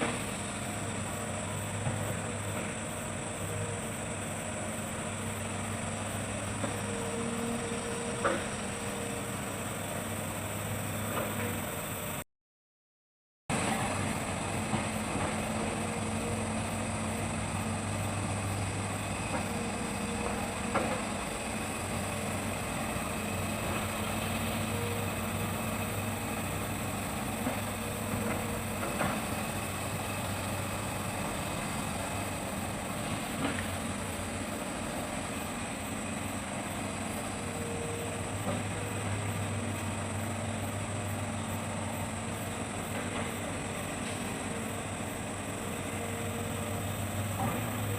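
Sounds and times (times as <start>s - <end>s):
excavator diesel engine running: 0.0s - 12.2s, 13.5s - 47.9s.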